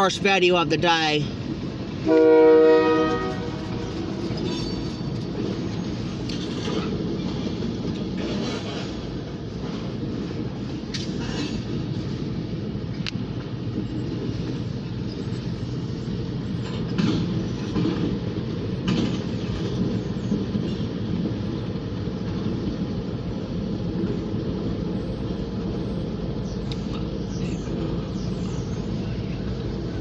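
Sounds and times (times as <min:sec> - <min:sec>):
freight train rumbling past: 0:00.0 - 0:30.0
wheels clicking over rail joints: 0:03.6 - 0:12.1, 0:16.6 - 0:21.6.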